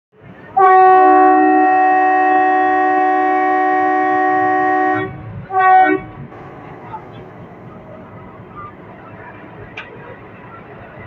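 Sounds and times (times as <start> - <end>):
train horn blasts: 0.6 - 7.5.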